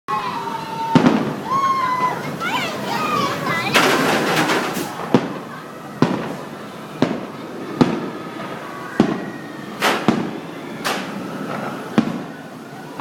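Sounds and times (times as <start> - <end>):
fireworks crackling: 0.2 - 13.0
fireworks bangs: 0.6 - 12.6.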